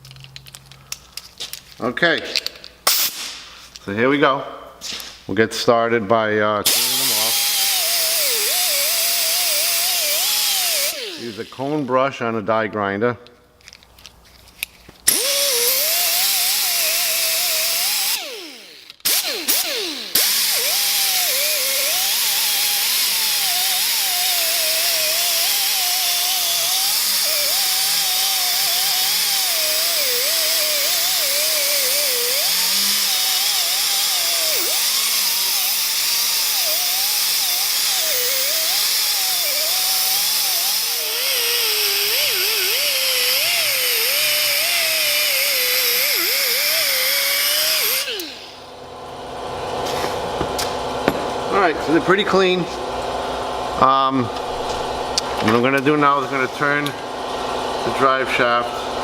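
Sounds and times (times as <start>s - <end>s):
die grinder with wire brush: 6.7s - 11.9s, 15.1s - 48.7s.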